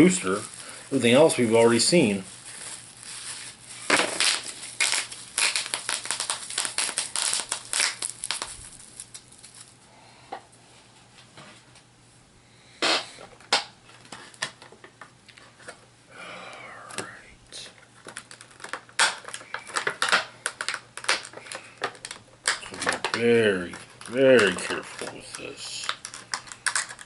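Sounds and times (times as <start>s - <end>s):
plastic packaging crinkling: 0.0s - 9.8s, 17.9s - 27.0s.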